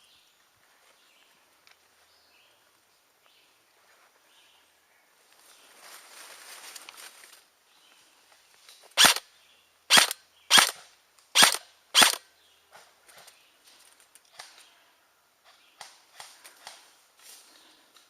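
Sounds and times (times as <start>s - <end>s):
faint ticks and rustling: 0.4s - 9.0s, 12.7s - 14.8s
airsoft gun shots: 9.0s - 9.2s, 9.9s - 10.8s, 11.4s - 12.2s.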